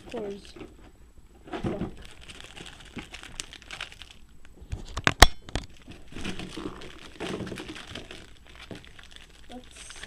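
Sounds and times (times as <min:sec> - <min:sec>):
plastic packaging crinkling: 0:01.5 - 0:10.0.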